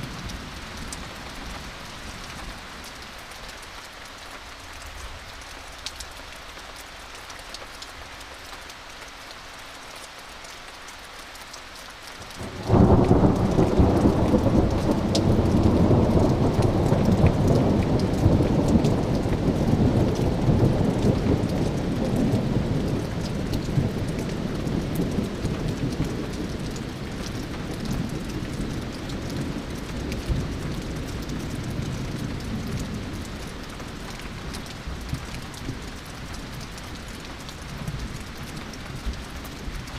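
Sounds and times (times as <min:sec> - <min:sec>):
steady rain falling: 0:00.0 - 0:39.9
thunder clap and rumble: 0:12.3 - 0:39.9.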